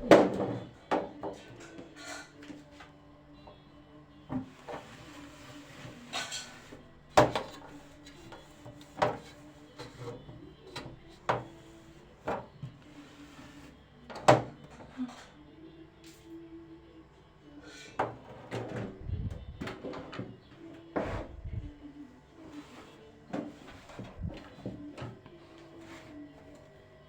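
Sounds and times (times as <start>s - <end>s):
knocks and clunks of kitchen items: 0.0s - 2.6s, 5.8s - 11.6s, 12.2s - 12.8s, 14.1s - 15.2s, 17.9s - 21.4s, 23.3s - 25.2s.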